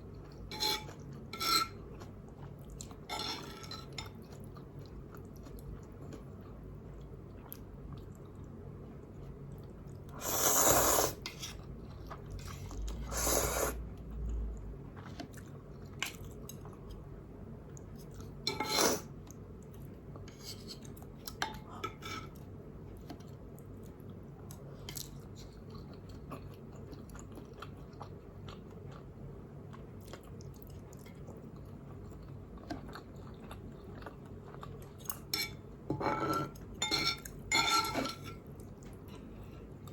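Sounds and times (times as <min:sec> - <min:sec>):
person chewing noodles: 0:04.1 - 0:17.0, 0:23.2 - 0:35.3.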